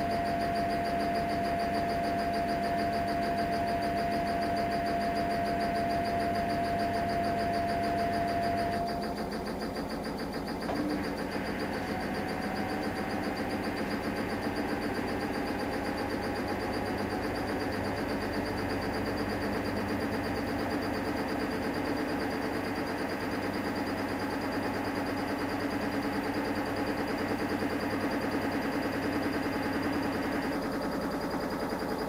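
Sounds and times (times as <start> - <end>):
washing machine whine and hum: 0.0 - 32.0
click: 10.6 - 11.0.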